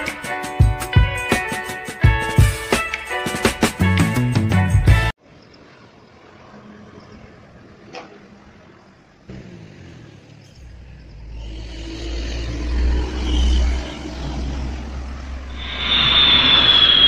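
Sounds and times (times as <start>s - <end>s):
faint road noise: 5.2s - 17.0s.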